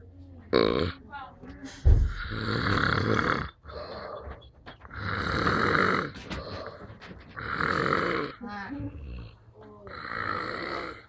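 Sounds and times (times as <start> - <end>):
person snoring loudly: 2.1 - 3.8, 4.9 - 6.2, 7.4 - 11.0.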